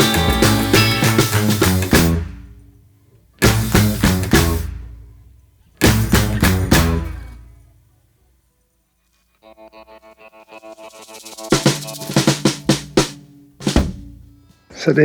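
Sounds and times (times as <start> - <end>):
instrumental with drums bass and guitar: 0.0 - 2.6, 3.4 - 5.0, 5.8 - 7.4, 10.4 - 14.6.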